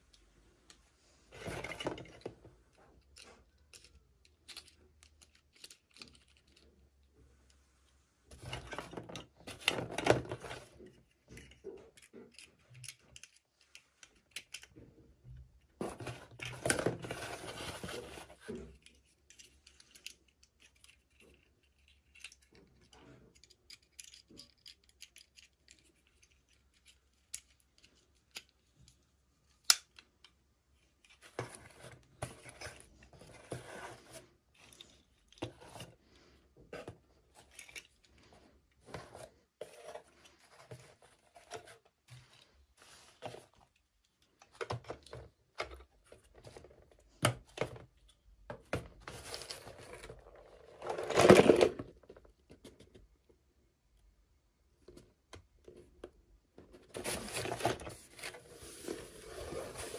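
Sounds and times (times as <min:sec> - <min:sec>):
plastic and card rustling: 0:15.8 - 0:28.5, 0:30.8 - 0:53.0, 0:56.6 - 0:59.9.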